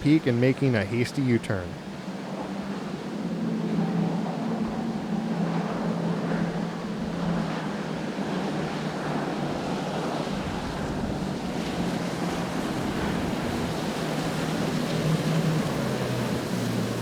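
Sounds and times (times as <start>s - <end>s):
boat engine hum: 0.0s - 17.0s
surf: 0.0s - 17.0s
wind: 0.0s - 17.0s.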